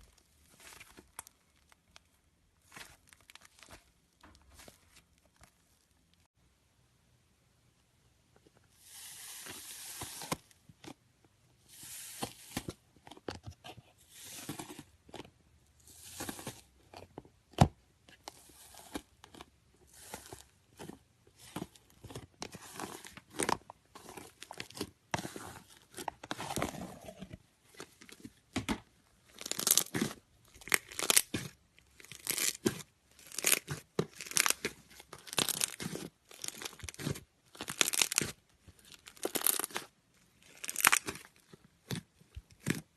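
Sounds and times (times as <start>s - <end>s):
slime crackling and popping: 29.4s - 41.3s.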